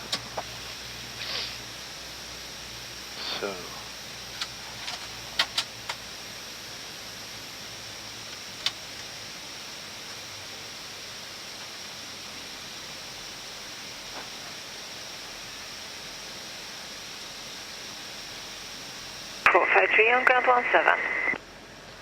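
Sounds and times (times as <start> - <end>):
airliner engine and air hiss: 1.1 - 1.8, 3.2 - 3.9, 19.5 - 21.4.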